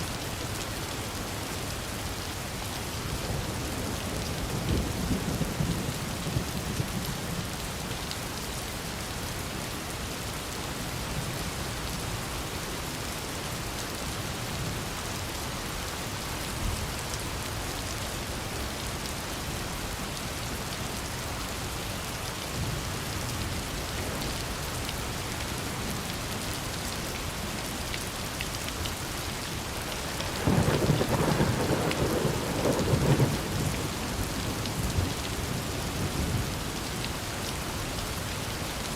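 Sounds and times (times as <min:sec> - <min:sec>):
steady rain falling: 0:00.0 - 0:38.9
thunder rumbling: 0:30.1 - 0:36.4.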